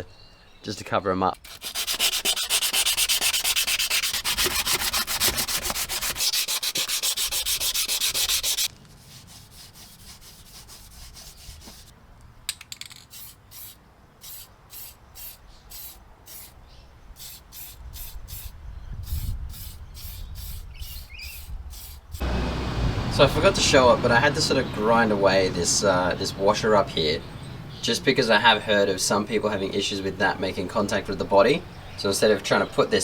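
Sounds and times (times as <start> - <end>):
sandpaper scraping steel: 1.4 - 11.9, 13.1 - 16.6, 19.1 - 22.3.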